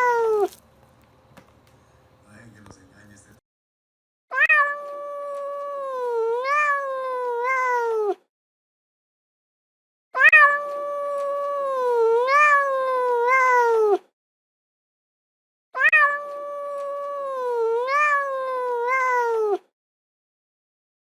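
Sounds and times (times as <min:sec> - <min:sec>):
cat meowing: 0:00.0 - 0:00.6, 0:04.3 - 0:08.2, 0:10.2 - 0:14.1, 0:15.8 - 0:19.7.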